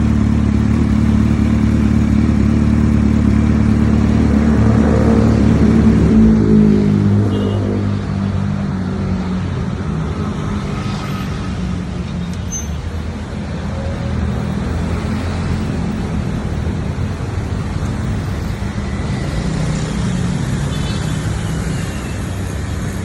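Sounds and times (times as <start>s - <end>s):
motorcycle engine running: 0.0s - 7.6s, 13.1s - 21.2s.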